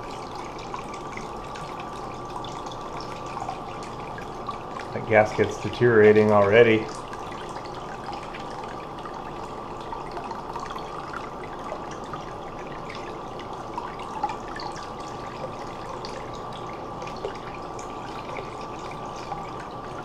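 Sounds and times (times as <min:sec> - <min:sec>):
running water: 0:00.0 - 0:20.0
water dripping: 0:00.0 - 0:20.0.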